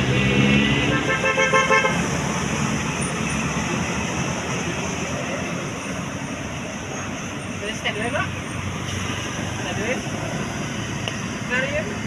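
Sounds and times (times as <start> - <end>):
bus engine and road noise: 0.0 - 12.0
multi-tone musical bus horn: 0.6 - 2.2.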